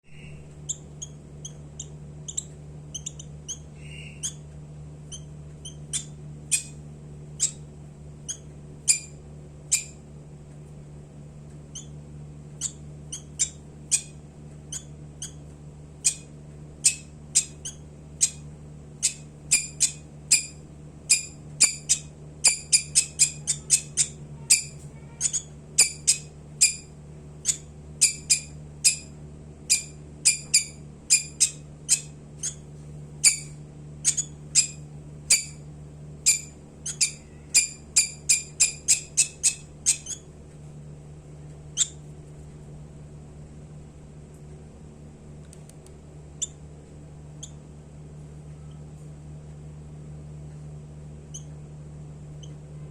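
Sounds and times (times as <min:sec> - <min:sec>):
steady low hum: 0:00.0 - 0:52.9
bird high-pitched chirps: 0:00.1 - 0:04.5, 0:05.1 - 0:06.8, 0:07.4 - 0:07.6, 0:08.2 - 0:10.0, 0:11.7 - 0:12.0, 0:12.6 - 0:15.4, 0:16.0 - 0:18.4, 0:19.0 - 0:29.1, 0:29.7 - 0:32.6, 0:33.2 - 0:35.6, 0:36.2 - 0:40.3, 0:41.8 - 0:42.0, 0:51.3 - 0:51.6.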